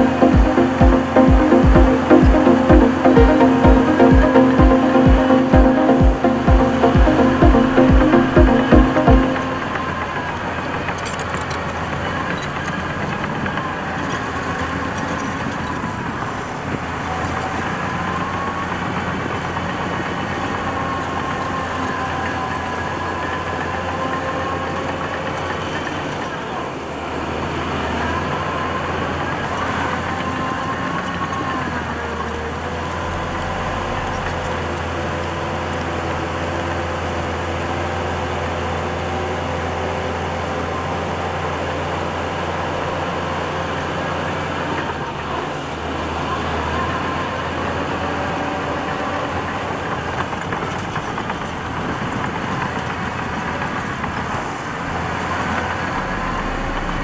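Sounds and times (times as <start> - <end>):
machinery whine: 0.0 - 11.5, 28.6 - 38.4, 55.0 - 57.0.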